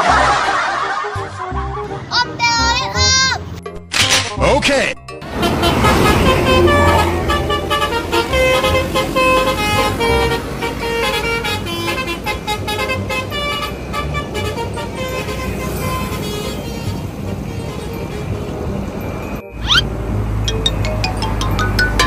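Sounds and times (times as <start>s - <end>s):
bus engine running: 1.4s - 3.6s, 5.2s - 22.0s
multi-tone musical air horn: 5.3s - 18.6s.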